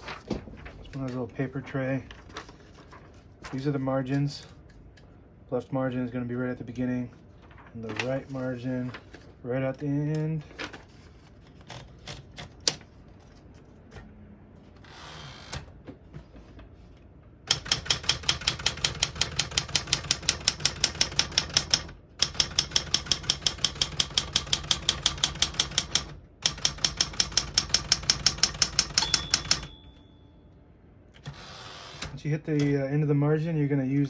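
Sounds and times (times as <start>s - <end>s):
manual typewriter typing rapidly: 11.6s - 12.8s, 17.5s - 29.9s.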